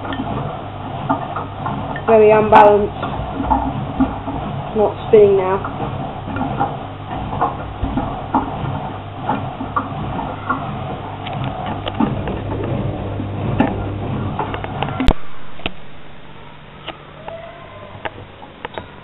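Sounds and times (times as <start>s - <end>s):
washing machine drum turning: 0.0s - 17.0s.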